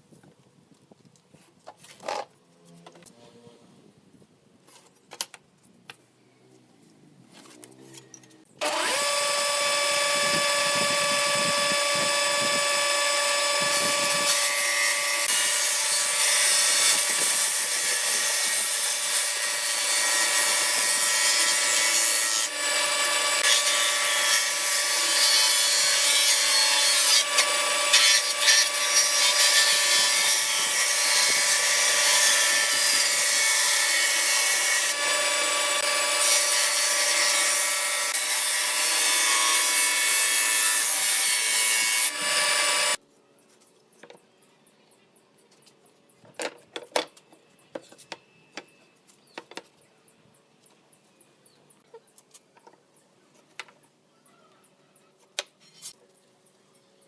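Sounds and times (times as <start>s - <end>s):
power tool cutting wood: 8.6s - 43.0s.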